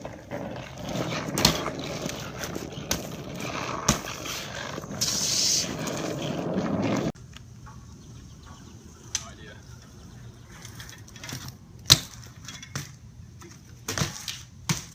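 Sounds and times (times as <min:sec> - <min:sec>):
bike rolling and rattling: 0:00.0 - 0:14.9
hissing scrape: 0:01.1 - 0:07.2.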